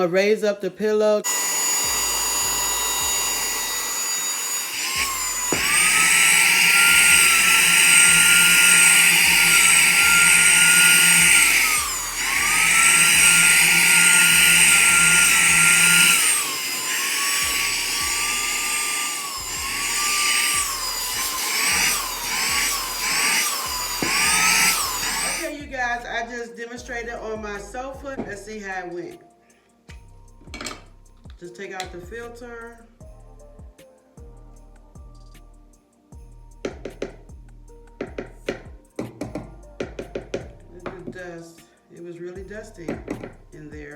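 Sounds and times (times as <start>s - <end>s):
handheld vacuum whining: 1.3s - 25.6s.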